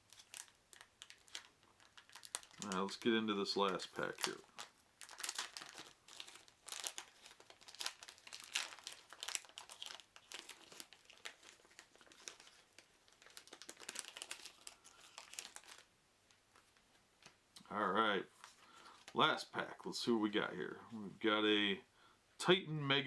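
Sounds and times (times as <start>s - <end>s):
foil pack crinkling and tearing: 0.0s - 15.9s.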